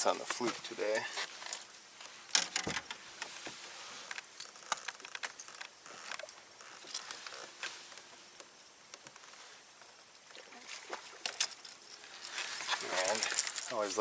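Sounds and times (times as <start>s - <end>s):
fishing tackle clicks and rattles: 11.2s - 14.0s.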